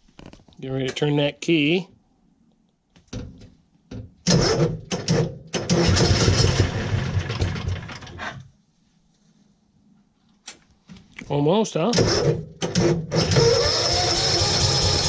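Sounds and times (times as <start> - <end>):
starter cranking engine: 4.3 - 8.4, 12.0 - 15.0.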